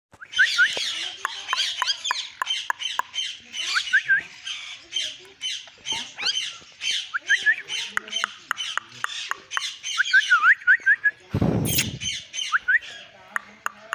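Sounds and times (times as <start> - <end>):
parrot chattering: 0.8 - 10.3.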